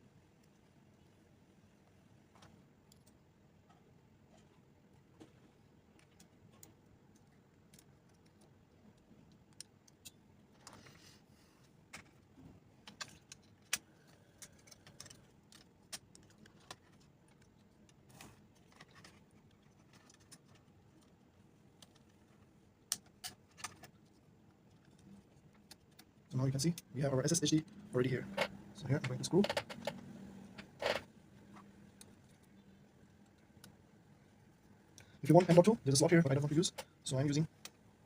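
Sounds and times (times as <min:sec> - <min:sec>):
small parts clicking and tapping: 0:01.8 - 0:10.8, 0:11.6 - 0:26.9.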